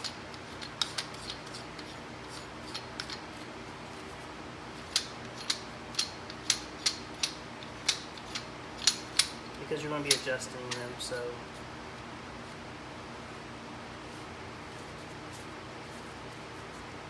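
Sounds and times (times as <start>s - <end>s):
metal ring spinning on thread clicks: 0.0s - 3.3s, 4.8s - 11.2s
faint steady hum: 0.0s - 17.0s.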